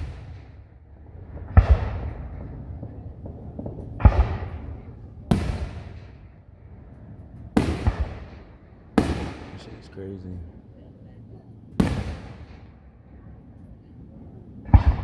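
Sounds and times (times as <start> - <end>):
fireworks booming: 0.0 - 15.0.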